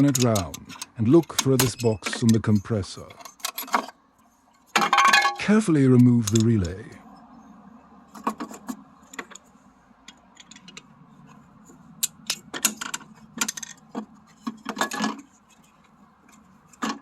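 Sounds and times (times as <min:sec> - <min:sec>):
relay clicks and plastic clatter: 0:00.0 - 0:04.0, 0:06.0 - 0:06.8, 0:12.0 - 0:17.0.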